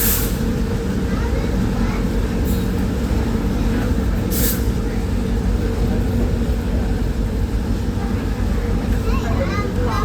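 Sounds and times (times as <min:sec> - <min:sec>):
train rumble: 0:00.0 - 0:10.0.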